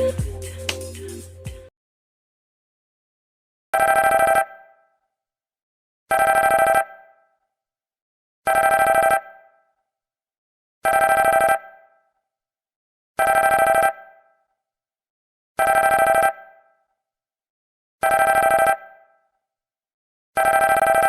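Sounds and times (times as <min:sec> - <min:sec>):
fluttering electronic phone ring: 0:03.8 - 0:04.8, 0:10.9 - 0:11.8, 0:18.0 - 0:19.0, 0:20.4 - 0:21.0.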